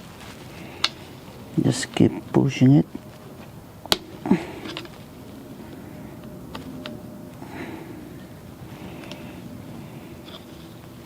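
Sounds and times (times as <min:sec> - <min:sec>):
faint low hum: 0:00.0 - 0:11.0
person grunting: 0:04.2 - 0:04.8.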